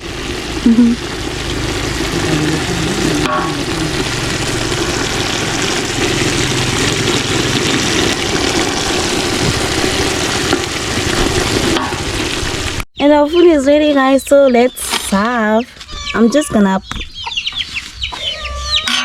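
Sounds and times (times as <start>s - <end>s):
pot bubbling over fire: 0.0s - 12.9s.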